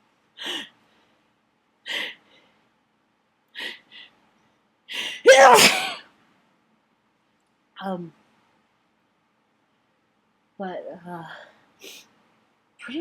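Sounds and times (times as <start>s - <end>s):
person sneezing loudly: 5.3s - 6.0s.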